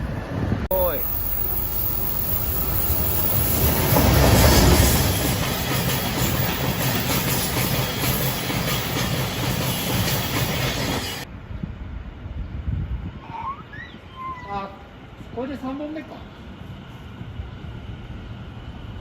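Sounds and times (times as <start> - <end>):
train wheels clattering over rail joints: 0.7 - 11.2.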